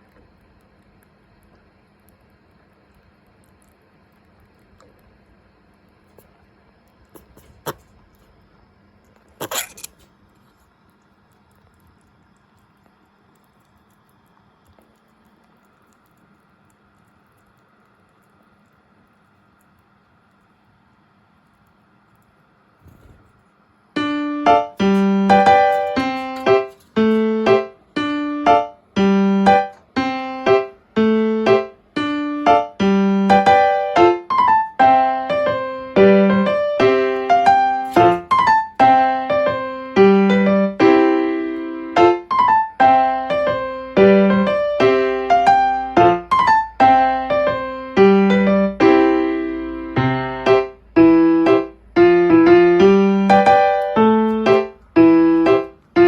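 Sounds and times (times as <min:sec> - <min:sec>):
gentle piano music: 0:24.0 - 0:56.0.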